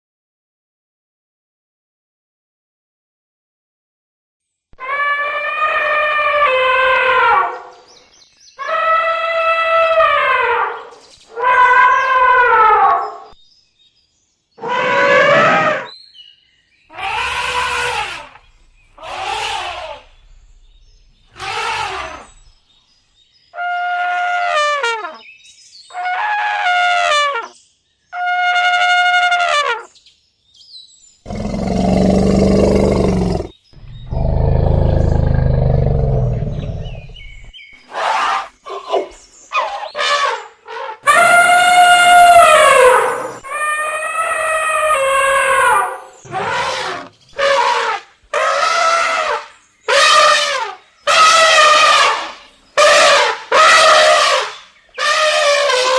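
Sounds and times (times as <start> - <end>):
elephant roaring: 14.6 - 15.9, 17.0 - 20.5, 21.3 - 22.5, 31.3 - 37.5, 44.8 - 47.8
elephant trumpeting: 14.6 - 15.9, 16.9 - 20.4, 21.3 - 22.5, 31.3 - 38.5, 39.6 - 55.9.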